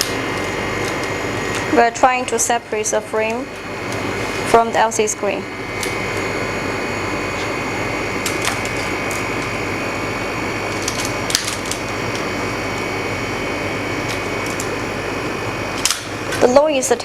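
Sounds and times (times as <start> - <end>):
machine running with faint whine: 0.0 - 17.0
sharp clicks and cracks: 8.2 - 9.2, 10.7 - 12.2, 15.8 - 16.4.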